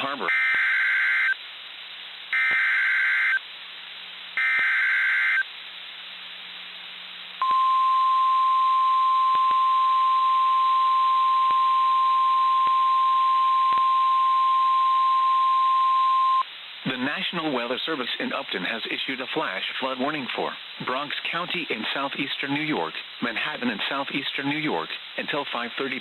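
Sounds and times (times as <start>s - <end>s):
radio hiss: 0.0s - 0.4s, 9.0s - 26.0s
steady warning alarm tone: 7.4s - 16.4s.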